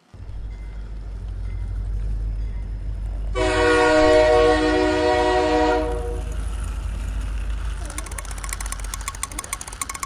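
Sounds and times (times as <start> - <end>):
low rumble: 0.1 - 7.8
train horn blast: 3.3 - 6.4.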